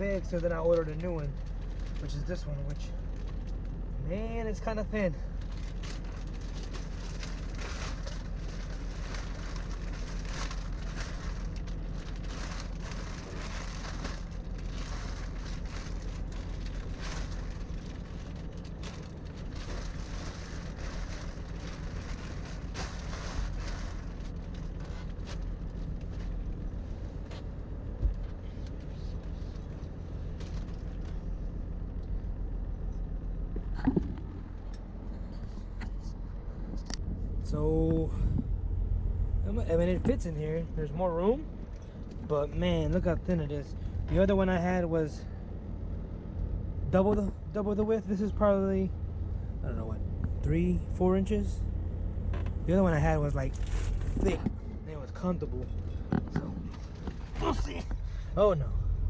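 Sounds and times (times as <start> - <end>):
diesel truck engine idling: 0.0 - 59.0
crackly plastic wrapping rustling: 5.3 - 26.6.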